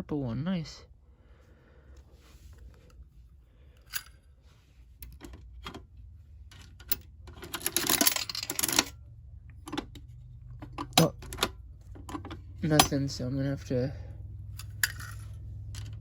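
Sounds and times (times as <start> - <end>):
metallic clatter of coins: 6.5 - 9.0, 14.6 - 16.0.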